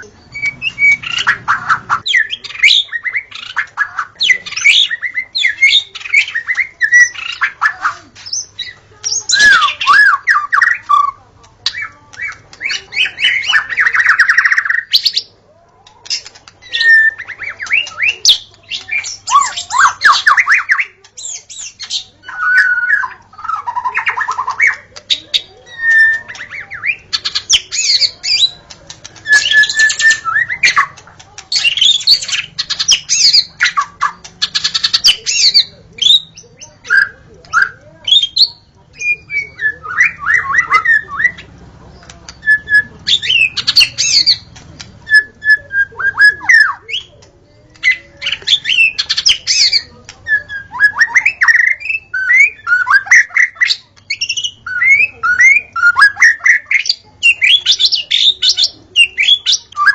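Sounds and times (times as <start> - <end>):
bird singing whistled notes: 0.0 - 3.3, 25.6 - 28.6, 29.2 - 31.0
bird harsh chattering: 0.0 - 59.9.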